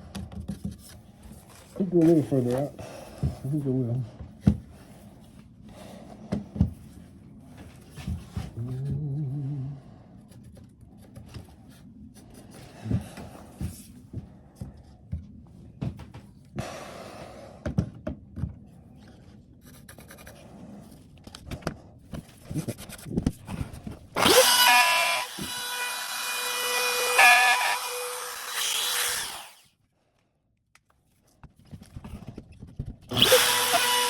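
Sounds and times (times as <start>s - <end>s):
electric power tool whining: 24.2s - 29.6s, 33.1s - 34.0s.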